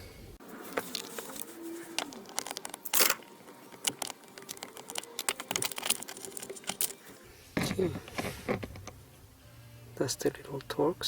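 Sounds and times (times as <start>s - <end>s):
plastic scrape: 0.5s - 7.0s, 7.6s - 9.0s
screwdriver clicking and tapping: 3.8s - 6.9s.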